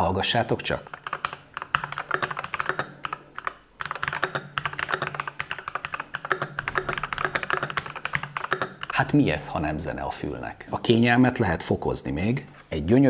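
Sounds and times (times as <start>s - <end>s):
mechanical keyboard typing: 0.7s - 9.2s.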